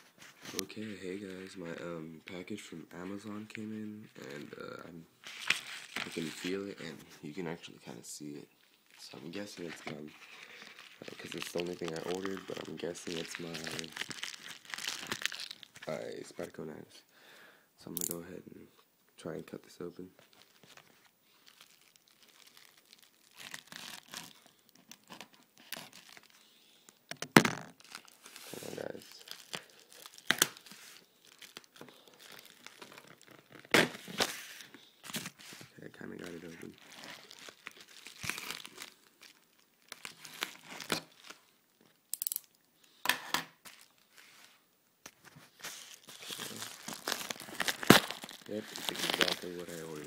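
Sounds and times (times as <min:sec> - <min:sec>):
packaging crinkling: 0:05.2 - 0:06.9, 0:08.9 - 0:16.0, 0:20.2 - 0:42.6, 0:43.6 - 0:50.0
package being torn open: 0:09.1 - 0:15.9, 0:20.4 - 0:26.4, 0:27.1 - 0:35.6, 0:36.4 - 0:41.5, 0:45.6 - 0:50.0.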